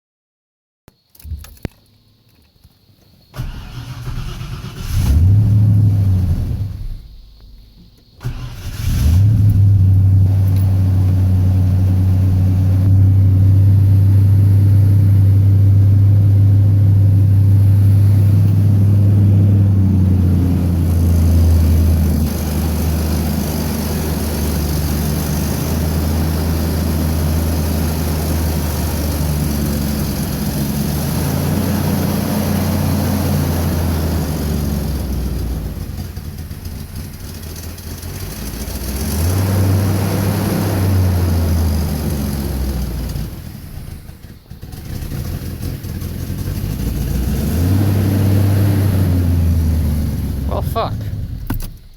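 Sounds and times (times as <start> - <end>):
car engine starting and idling: 3.2 - 51.9.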